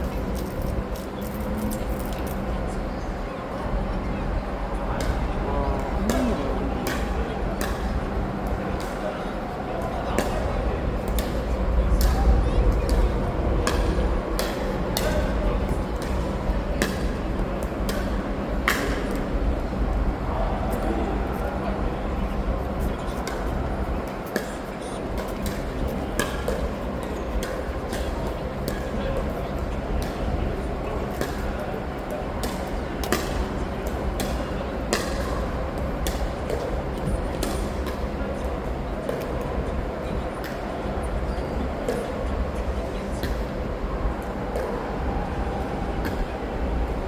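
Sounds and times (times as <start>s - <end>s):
low background rumble: 0.0s - 24.1s.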